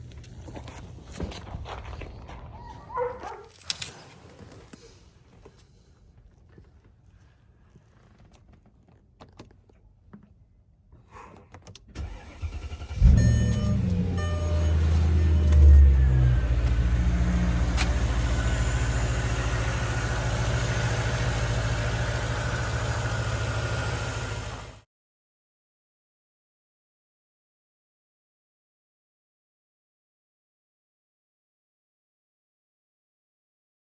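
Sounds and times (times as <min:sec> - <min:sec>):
car engine starting and idling: 0:11.7 - 0:24.8
short beeps: 0:13.0 - 0:16.7.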